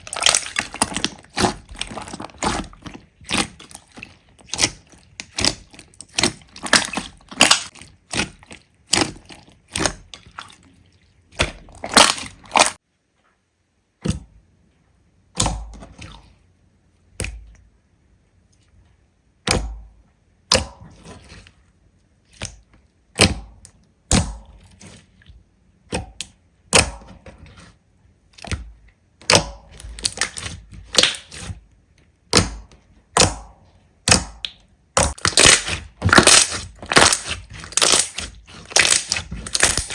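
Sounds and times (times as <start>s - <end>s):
slime squished by hand: 0.0s - 12.8s, 28.4s - 31.6s, 32.3s - 39.9s.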